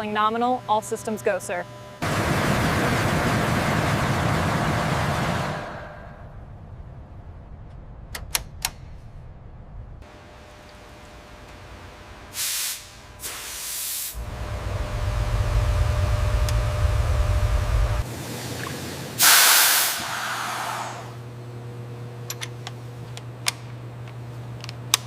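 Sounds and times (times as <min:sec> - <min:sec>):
air hissing: 0:12.3 - 0:18.0, 0:19.2 - 0:21.2
tank engine rumbling: 0:14.2 - 0:18.0.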